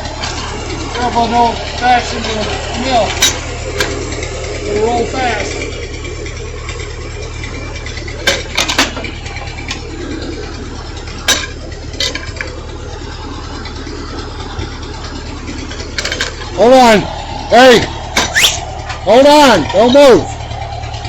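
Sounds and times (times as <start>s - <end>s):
tractor engine idling: 0.0s - 21.0s
sharp metallic clanks: 1.9s - 4.2s, 8.2s - 9.9s, 11.1s - 12.6s, 15.7s - 16.7s, 17.9s - 19.9s.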